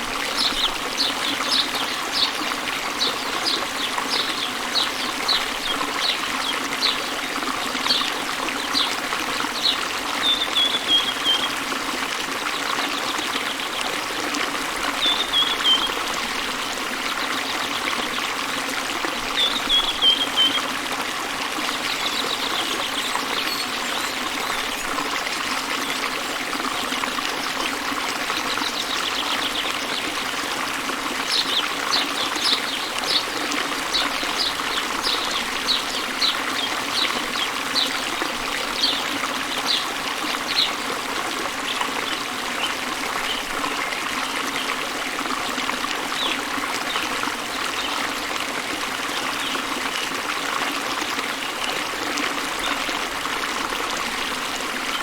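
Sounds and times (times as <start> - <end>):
birds chirping: 0.2 - 11.6, 15.0 - 16.0, 31.2 - 40.8.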